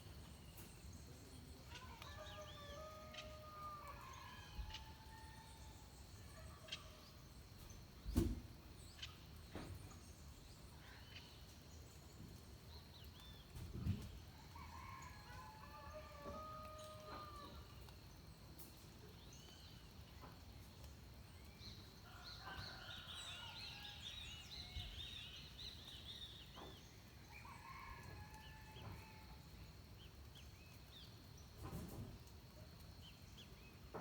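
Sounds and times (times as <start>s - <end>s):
distant rooster crowing: 1.7s - 5.7s, 14.4s - 17.7s.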